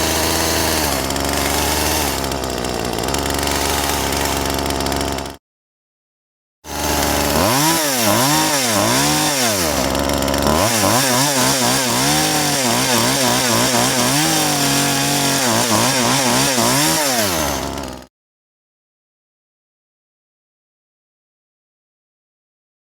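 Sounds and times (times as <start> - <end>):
chainsaw engine revving: 0.0 - 5.4, 6.7 - 18.1.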